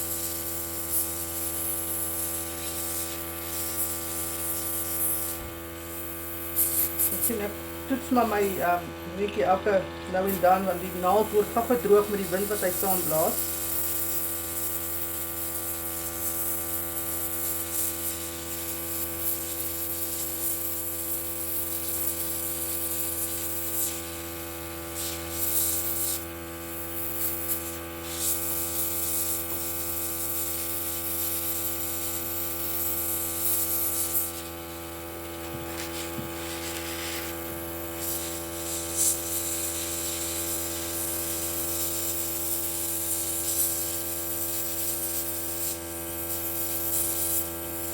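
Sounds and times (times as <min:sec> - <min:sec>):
airbrush spray hiss: 0:00.0 - 0:08.9, 0:10.1 - 0:47.9
compressor humming: 0:05.2 - 0:13.8, 0:34.2 - 0:39.1.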